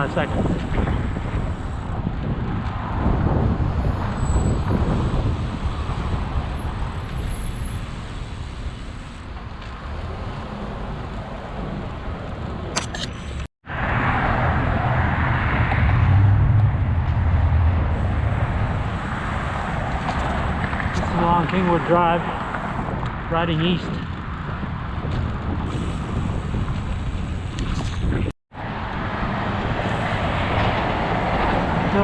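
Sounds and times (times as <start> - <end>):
wind rumbling over microphone: 0.0 - 12.8, 13.6 - 32.0
cars passing by: 0.0 - 32.0
road traffic: 0.0 - 32.0.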